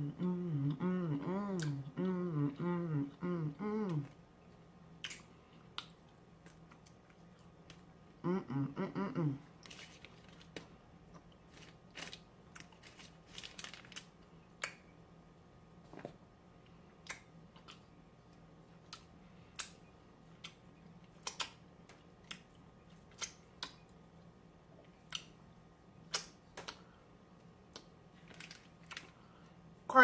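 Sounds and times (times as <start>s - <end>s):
low steady hum: 0.0s - 30.0s
crunching of fried food: 9.6s - 14.8s, 27.7s - 29.3s.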